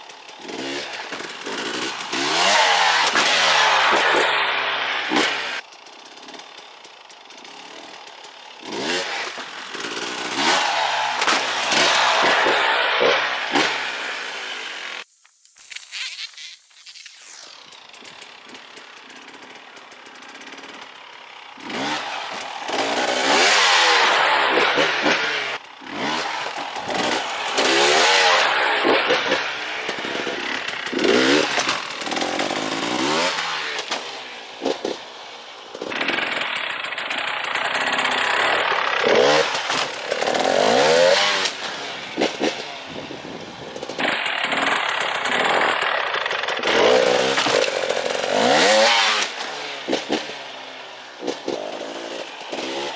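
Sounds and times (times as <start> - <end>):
two-stroke motorbike engine revving: 0.0 - 15.1, 17.1 - 52.9.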